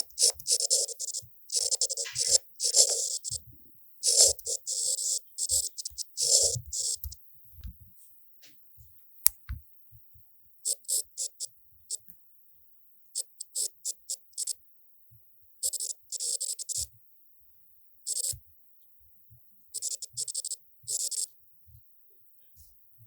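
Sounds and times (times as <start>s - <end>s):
pen scribbling on paper: 0.0s - 3.4s, 4.0s - 7.2s
sharp click: 9.2s - 9.6s.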